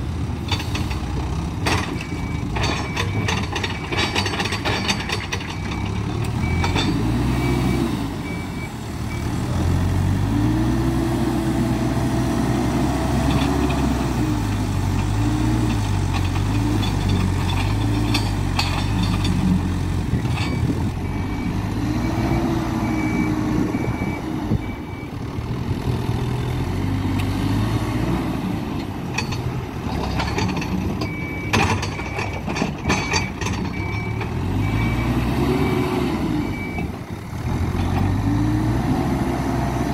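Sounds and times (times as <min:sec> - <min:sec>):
reversing alarm beeping: 0:02.0 - 0:04.2, 0:04.8 - 0:09.4, 0:20.4 - 0:25.2, 0:31.0 - 0:36.9
diesel engine revving: 0:05.5 - 0:39.9.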